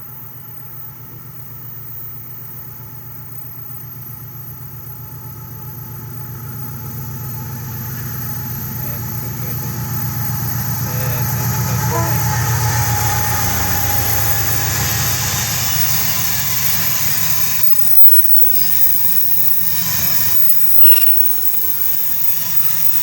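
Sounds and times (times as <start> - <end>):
locomotive engine rumble: 6.8 - 23.0.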